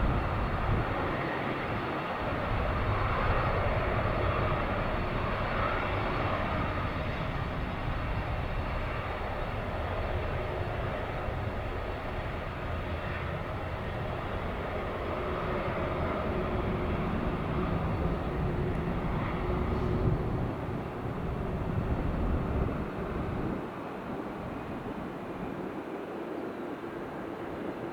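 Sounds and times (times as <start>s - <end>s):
faint jet whine: 0.0s - 27.9s
jet engines rumbling: 0.0s - 27.9s.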